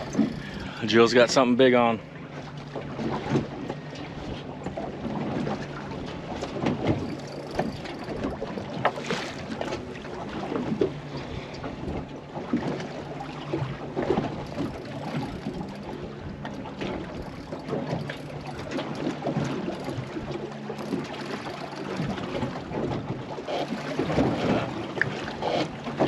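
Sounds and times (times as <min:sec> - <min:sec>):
outboard motor idling: 0:00.0 - 0:26.0
water slapping against hull: 0:00.0 - 0:26.0.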